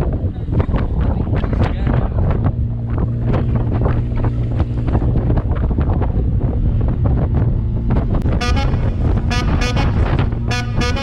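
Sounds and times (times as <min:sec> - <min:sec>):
wind buffeting microphone: 0:00.0 - 0:11.0
boat engine droning: 0:00.4 - 0:11.0.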